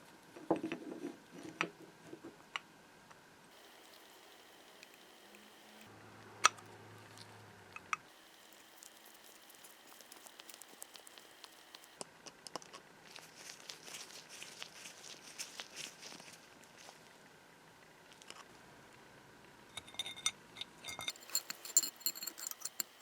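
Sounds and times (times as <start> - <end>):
rustling crinkling patter: 12.6 - 17.2.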